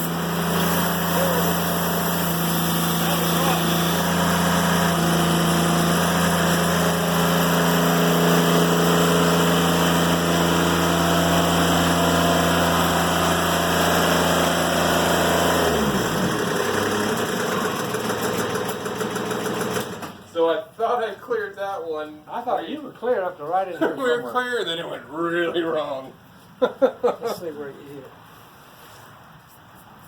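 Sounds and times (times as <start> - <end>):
sawmill diesel engine running: 0.0 - 20.3.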